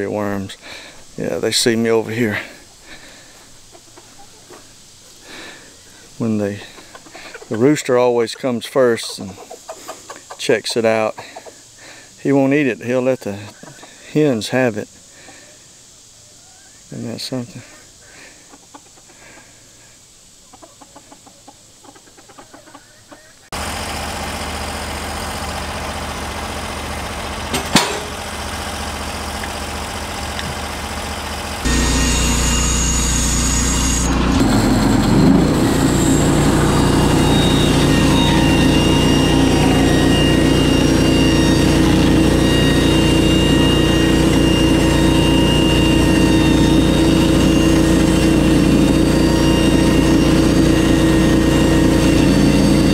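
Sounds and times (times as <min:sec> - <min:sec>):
sawmill engine running: 0:00.0 - 0:03.8, 0:23.6 - 0:52.9
chickens clucking: 0:00.0 - 0:14.1, 0:15.2 - 0:16.8, 0:17.4 - 0:23.5.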